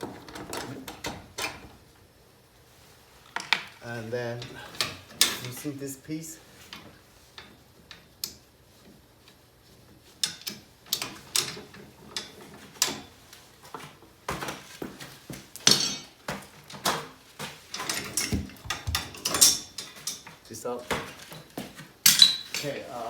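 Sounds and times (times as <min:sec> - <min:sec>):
metal tools clinking and clanking: 0:04.3 - 0:05.7, 0:10.2 - 0:13.1, 0:15.6 - 0:17.0, 0:17.7 - 0:20.4, 0:22.0 - 0:22.8.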